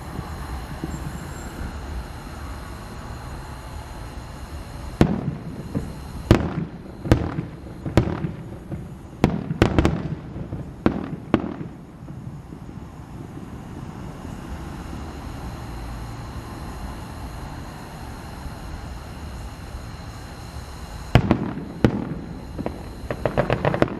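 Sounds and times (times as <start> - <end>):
steady low rumble: 0.0 - 23.9
firework shells bursting: 4.2 - 15.6, 20.9 - 23.9.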